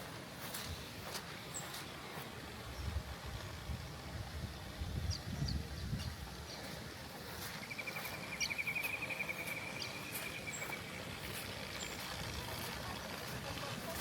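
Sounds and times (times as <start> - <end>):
high bird chirps: 7.6 - 10.9.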